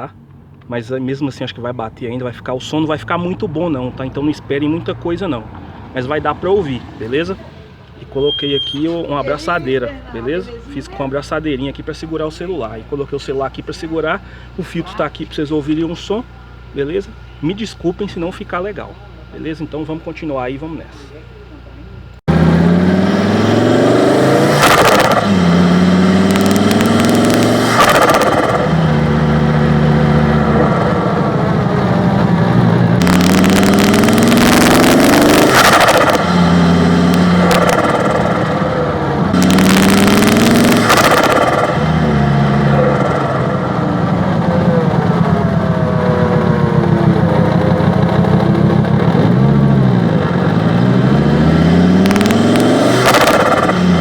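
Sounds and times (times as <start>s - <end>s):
turbocharged engine revving: 0.0s - 21.1s, 22.0s - 54.0s
turbo flutter rushing bursts: 26.1s - 43.8s.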